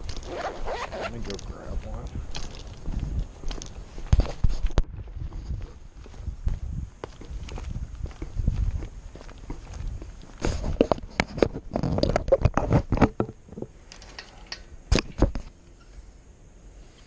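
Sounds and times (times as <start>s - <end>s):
tools clattering and rustling: 2.2s - 4.7s, 10.4s - 15.4s.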